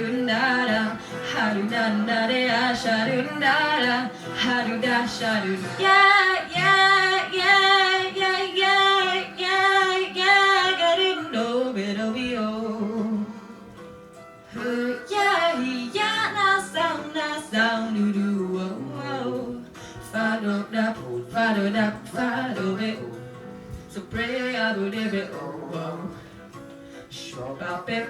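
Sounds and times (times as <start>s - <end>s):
piano: 0.0s - 28.0s
drums: 19.8s - 28.0s.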